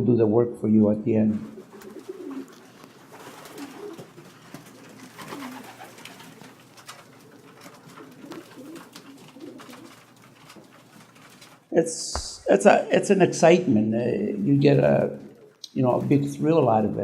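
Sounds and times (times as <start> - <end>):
pigeons cooing: 1.3 - 11.7, 14.3 - 16.2.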